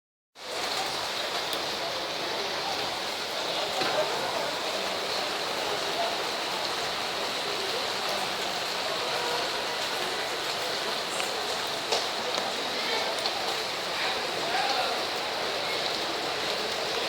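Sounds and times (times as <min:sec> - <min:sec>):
heavy rain hissing: 0:00.4 - 0:17.0
rain drop taps: 0:11.0 - 0:13.6.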